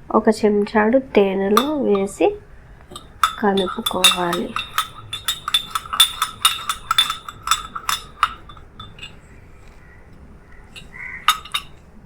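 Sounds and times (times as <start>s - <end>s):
spoon clinking against bowl: 1.6s - 2.2s, 2.9s - 9.2s, 10.7s - 11.8s.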